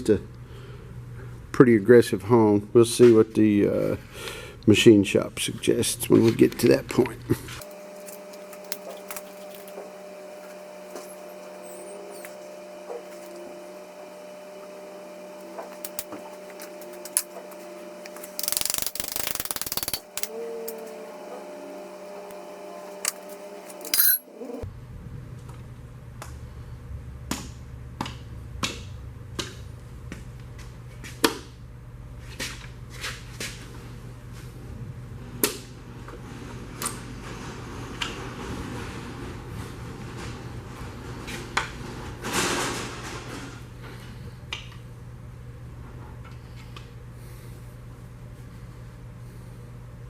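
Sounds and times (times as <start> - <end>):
tools and metal parts clicking: 18.4 - 20.8, 23.0 - 24.3.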